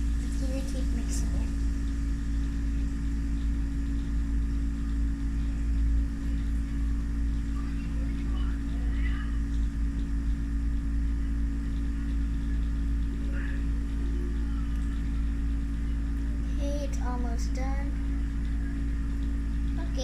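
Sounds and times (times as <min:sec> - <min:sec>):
low machine hum: 0:00.0 - 0:20.0.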